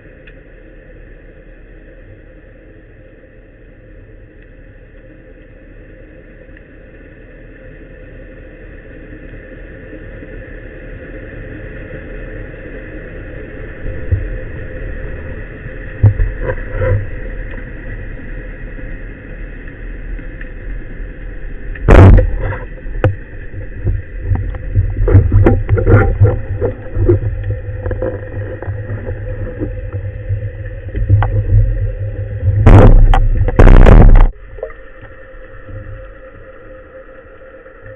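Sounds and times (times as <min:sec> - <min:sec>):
loud bang: 0:21.9 - 0:22.6, 0:32.6 - 0:34.3
sharp knocks and clicks: 0:32.6 - 0:34.3.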